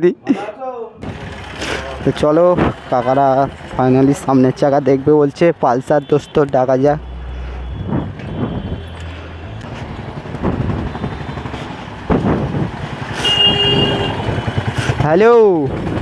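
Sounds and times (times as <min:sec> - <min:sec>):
road traffic passing: 0:01.0 - 0:16.0.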